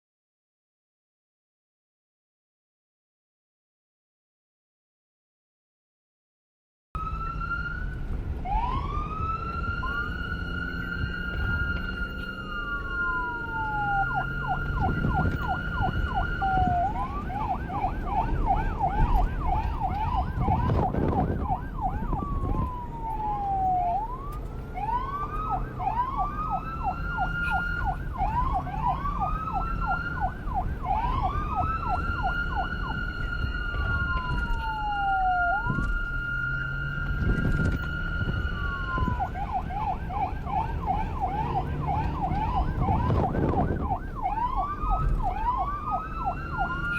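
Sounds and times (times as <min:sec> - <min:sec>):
engine and road rumble: 0:07.0 - 0:46.9
police siren: 0:07.0 - 0:46.9.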